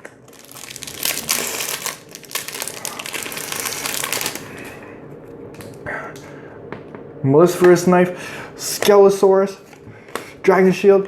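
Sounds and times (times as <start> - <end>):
foil wrapper crinkling and tearing: 0.0 - 4.8.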